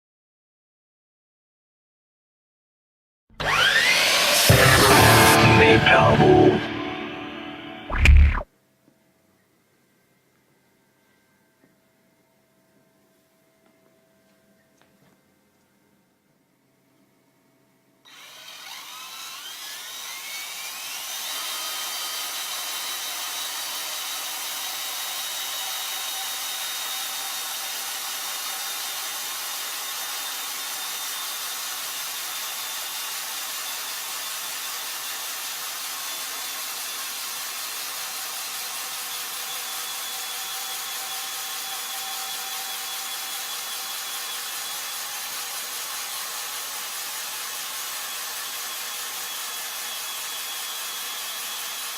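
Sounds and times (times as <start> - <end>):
drill motor whining: 3.4 - 8.4, 18.1 - 29.2.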